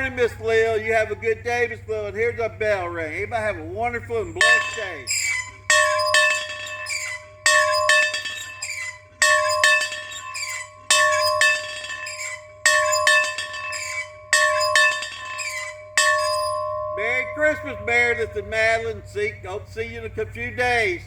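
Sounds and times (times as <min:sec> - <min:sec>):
bell ringing: 0:04.4 - 0:20.0.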